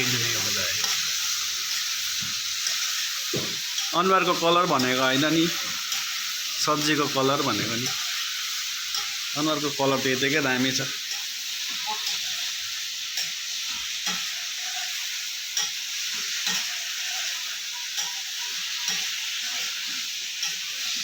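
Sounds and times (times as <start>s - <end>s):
food sizzling in oil: 0.0s - 21.0s
spoon scraping a pan: 0.0s - 21.0s.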